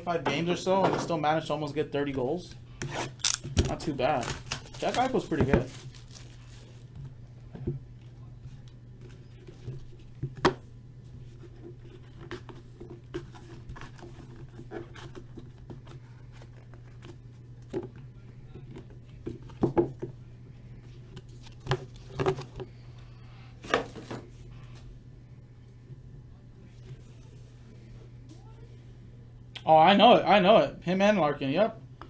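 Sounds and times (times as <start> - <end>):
steady low hum: 0.0 - 32.0
cards and packaging clicks and rustles: 2.8 - 6.9, 21.0 - 22.7.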